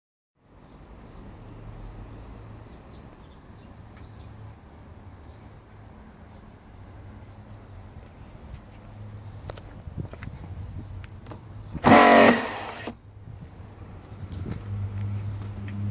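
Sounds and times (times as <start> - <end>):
birds chirping: 0.5 - 15.9.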